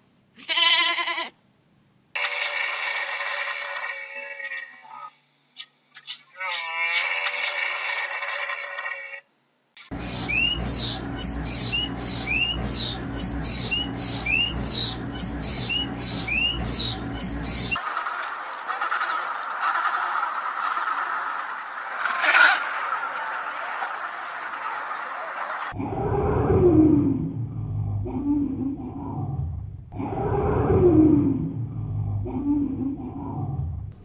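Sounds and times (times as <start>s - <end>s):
low rumble: 9.9s - 17.8s, 25.8s - 34.0s
bird squawking: 9.9s - 25.7s.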